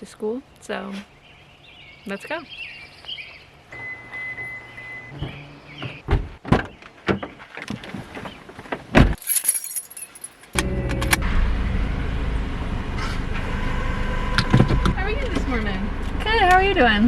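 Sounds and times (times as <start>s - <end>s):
car engine starting and running: 3.6s - 6.5s, 10.5s - 17.0s
keys jangling: 9.2s - 10.6s.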